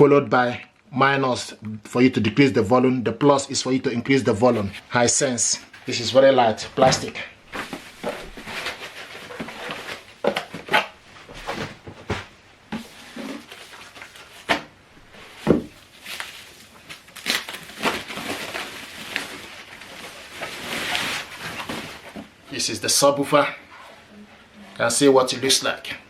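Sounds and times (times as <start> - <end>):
packaging rustling and crinkling: 6.8 - 22.5
knocks and thumps of plastic object: 15.4 - 15.8.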